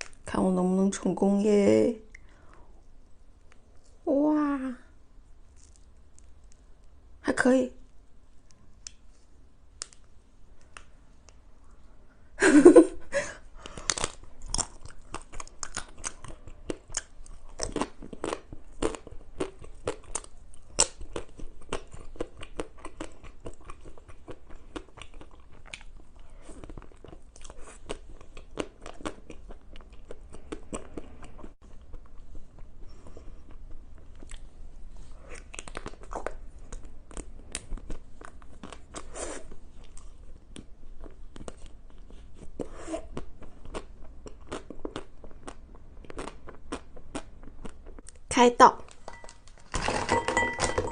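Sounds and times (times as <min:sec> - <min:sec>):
crunchy chewing: 0:13.6 - 0:48.2.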